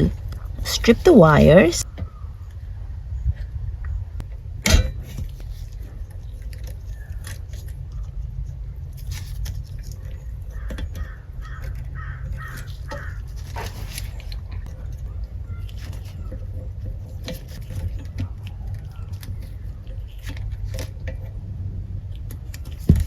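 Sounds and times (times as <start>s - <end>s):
low steady hum: 0.0s - 1.8s.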